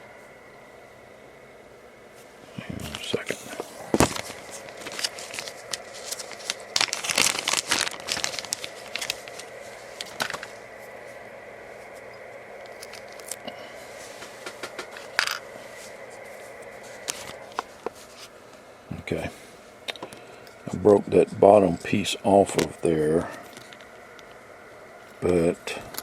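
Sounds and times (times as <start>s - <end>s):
circuit board and plastic parts handled: 2.8s - 10.6s, 12.6s - 13.4s, 14.2s - 15.5s.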